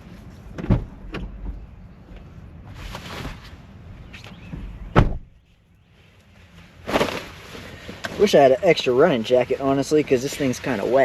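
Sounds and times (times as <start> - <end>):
car door thump: 0.6 - 1.6, 4.5 - 5.4
jacket rustling: 6.0 - 8.4.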